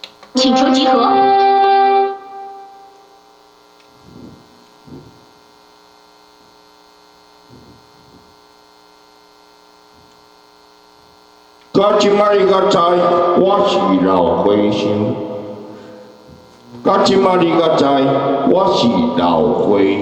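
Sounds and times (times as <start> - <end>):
electrical mains hum: 0.0 - 20.0
effects-processed voice: 0.4 - 1.8, 11.8 - 15.6, 16.7 - 20.0
faint low thumps: 4.0 - 5.3.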